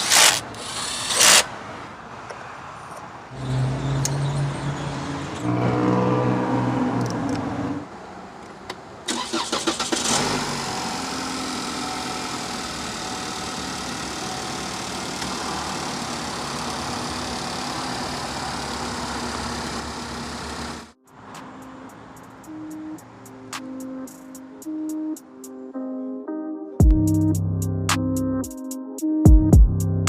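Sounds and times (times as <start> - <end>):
car engine cranking on starter: 9.1 - 20.9
car engine idling: 9.2 - 20.9.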